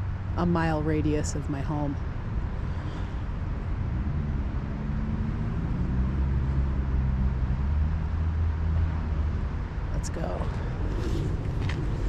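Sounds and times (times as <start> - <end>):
wind on microphone: 9.3 - 12.0
scooter wheels rumbling: 10.5 - 12.0.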